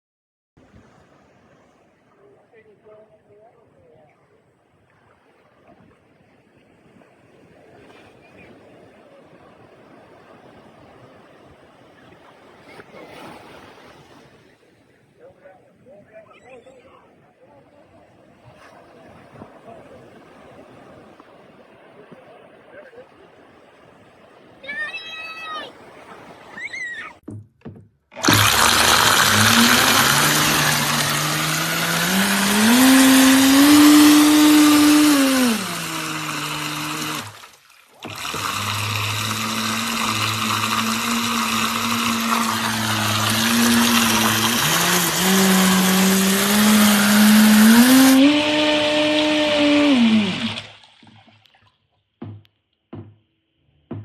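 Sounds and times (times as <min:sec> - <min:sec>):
electric motor whining: 0:28.2 - 0:37.4, 0:38.0 - 0:50.6
hiss of water: 0:28.2 - 0:51.2.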